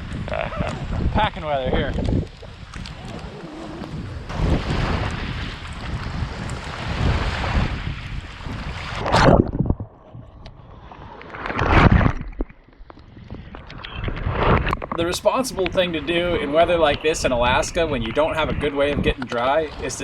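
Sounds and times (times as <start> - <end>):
wind buffeting microphone: 0.0 - 20.0
waves washing in: 2.3 - 9.7.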